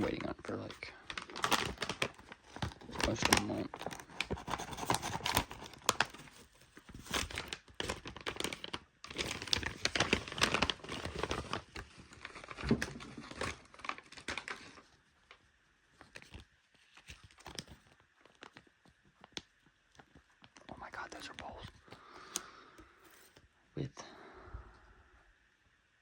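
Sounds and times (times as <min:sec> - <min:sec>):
packaging tearing and crinkling: 0:00.0 - 0:14.9, 0:16.0 - 0:20.6.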